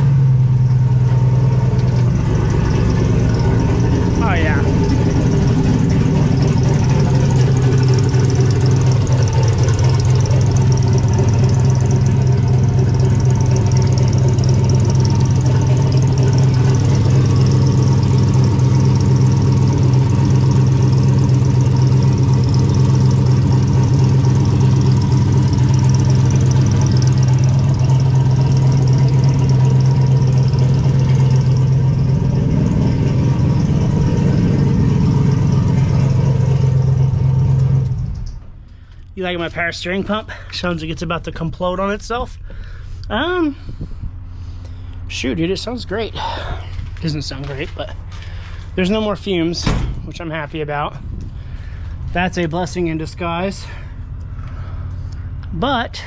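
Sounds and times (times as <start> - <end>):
power steering pump whine: 0.0 - 39.1
car engine idling: 0.0 - 41.4, 43.9 - 55.6.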